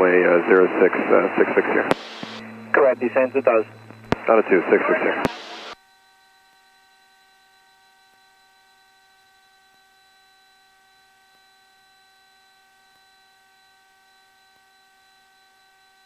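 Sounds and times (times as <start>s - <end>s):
faint electrical hum: 1.0s - 5.8s.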